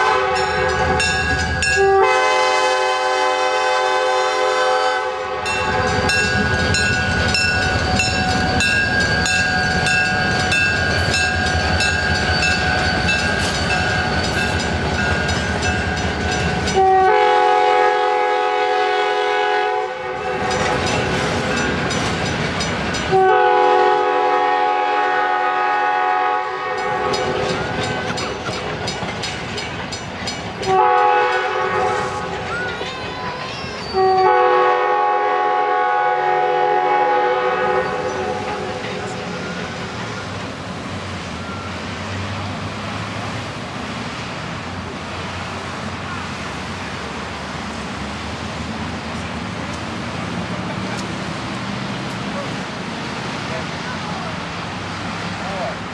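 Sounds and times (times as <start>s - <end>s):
locomotive horn blasts: 0.0s - 8.8s, 16.7s - 20.7s, 23.1s - 27.4s, 30.6s - 32.3s, 34.0s - 39.9s
train rumble and wheel clatter: 0.0s - 55.9s.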